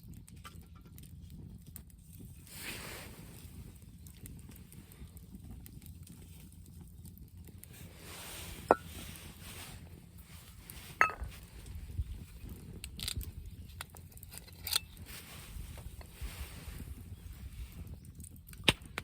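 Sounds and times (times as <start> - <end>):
wind rumble on microphone: 0.0 - 19.0
sharp ringing clinks and knocks: 11.0 - 11.4.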